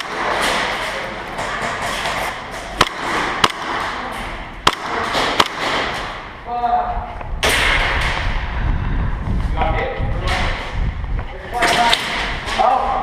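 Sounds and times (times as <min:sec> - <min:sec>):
steady noisy din: 0:00.0 - 0:13.0
airsoft gun cracks: 0:04.6 - 0:06.0.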